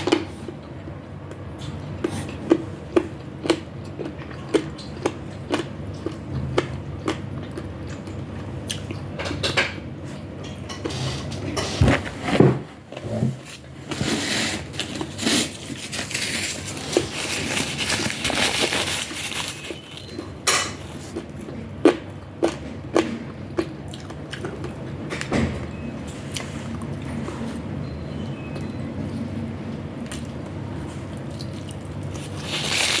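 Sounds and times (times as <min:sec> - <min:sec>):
wet chewing and biting: 0:01.6 - 0:09.0.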